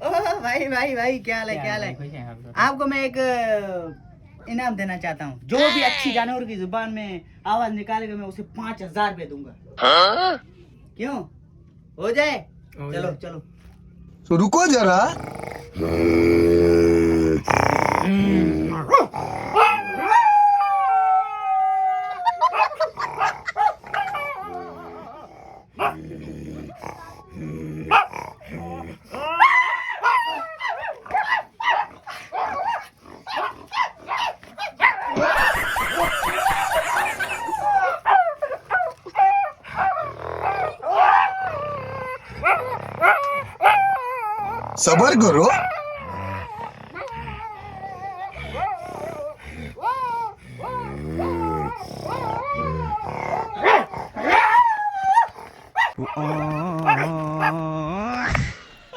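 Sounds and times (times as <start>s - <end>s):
person imitating dog barks: 5.5s - 6.3s, 9.8s - 10.4s, 55.8s - 58.9s
dog-like howling and yipping: 18.8s - 26.0s, 29.1s - 57.7s.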